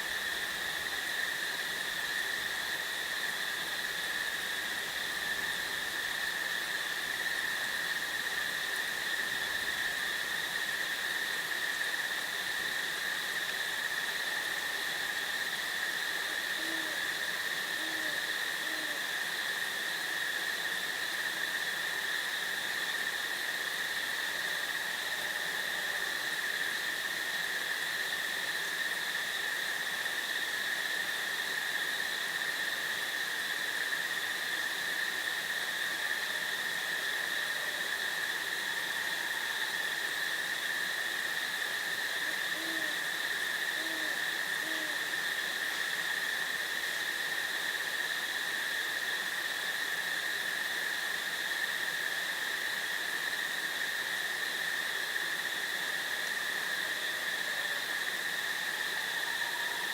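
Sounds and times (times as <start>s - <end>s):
insect chorus: 0.0s - 59.9s
low owl hoots: 16.4s - 19.0s, 42.2s - 45.2s.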